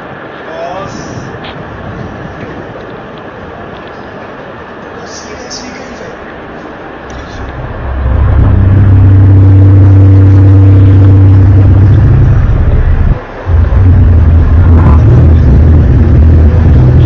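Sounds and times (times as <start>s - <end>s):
deep droning hum: 6.0s - 17.0s.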